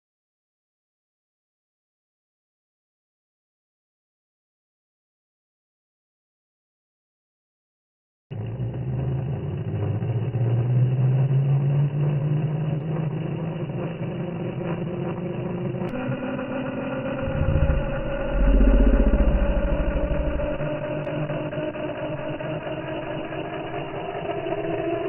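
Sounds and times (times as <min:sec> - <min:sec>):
deep rumble: 0:15.7 - 0:22.5.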